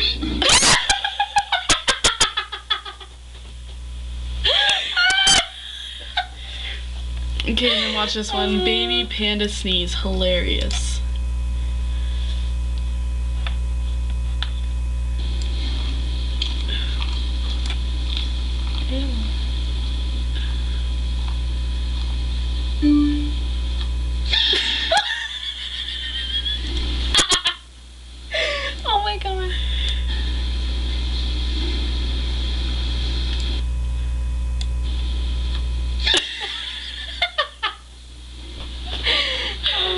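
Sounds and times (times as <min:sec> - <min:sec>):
low electrical hum: 0:00.0 - 0:39.9.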